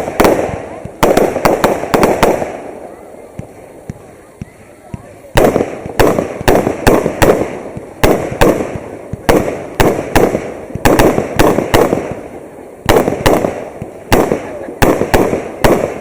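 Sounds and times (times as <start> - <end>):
fireworks bangs with echo: 0.0 - 16.0.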